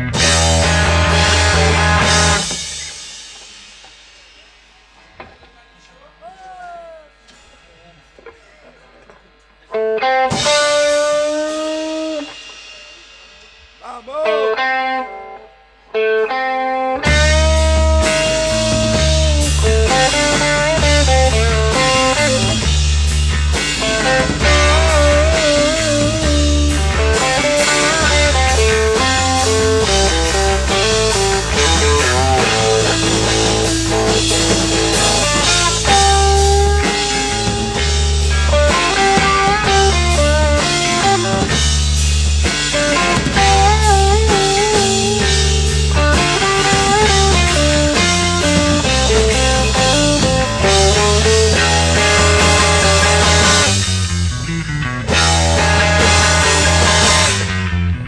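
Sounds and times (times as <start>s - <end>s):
bass line: 0.0s - 3.0s, 17.0s - 58.0s
electric guitar bent notes: 0.0s - 3.3s, 4.9s - 58.0s
steady drums: 0.0s - 16.0s, 17.0s - 58.0s.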